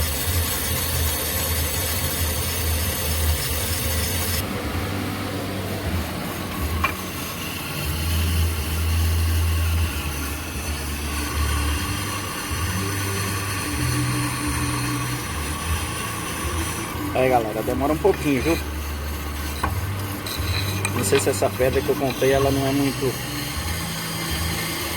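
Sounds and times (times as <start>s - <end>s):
car engine running: 3.6s - 22.1s
stone grinding brake disc: 5.8s - 24.9s.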